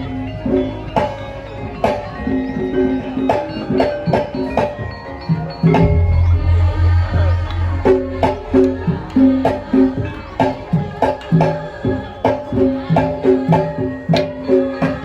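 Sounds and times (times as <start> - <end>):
ringing bell-like tones: 0.0 - 12.2
drum strokes: 5.4 - 15.0
deep bass tone: 5.8 - 9.9.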